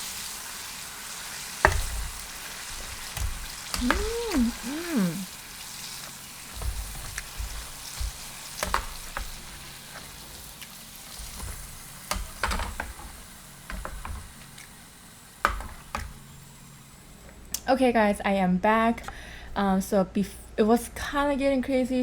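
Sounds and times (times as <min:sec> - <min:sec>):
chicken deep-frying in oil: 0:00.0 - 0:17.2.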